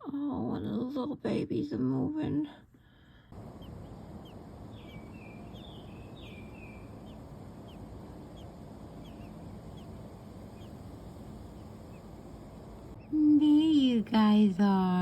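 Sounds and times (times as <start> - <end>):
low background rumble: 2.9 - 15.0
small songbirds chirping: 3.3 - 14.8.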